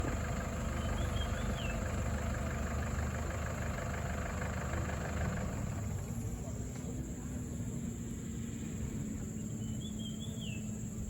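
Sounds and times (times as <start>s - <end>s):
vehicle engine idling: 0.0s - 9.6s.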